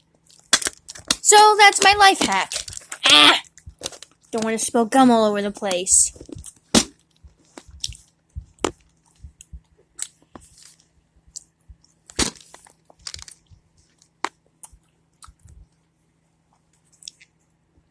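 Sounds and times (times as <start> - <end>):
person chewing gumballs: 6.2 - 10.3, 12.9 - 15.7, 16.9 - 17.4.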